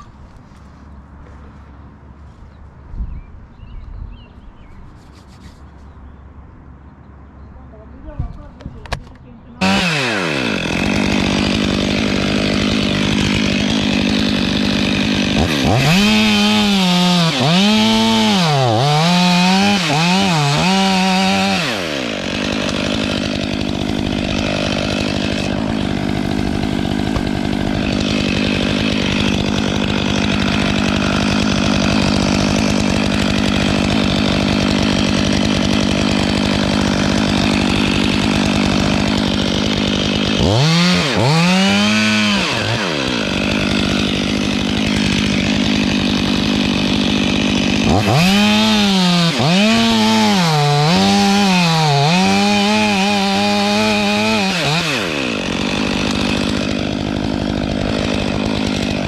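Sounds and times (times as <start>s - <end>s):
chainsaw cutting wood: 8.8s - 59.0s
chainsaw engine revving: 9.6s - 59.0s.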